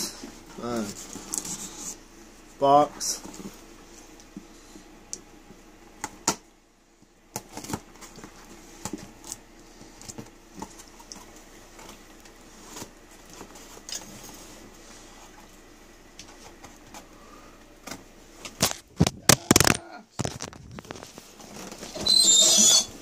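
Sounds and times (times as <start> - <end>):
box being handled and opened: 18.4 - 22.1.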